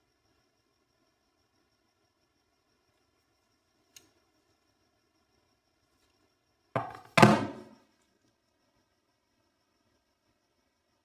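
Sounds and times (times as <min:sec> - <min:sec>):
faint click: 0:03.9 - 0:04.2
knocks: 0:06.8 - 0:07.7.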